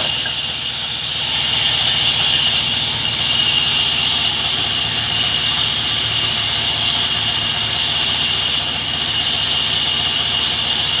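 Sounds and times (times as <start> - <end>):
sawmill machinery drone: 0.0 - 11.0.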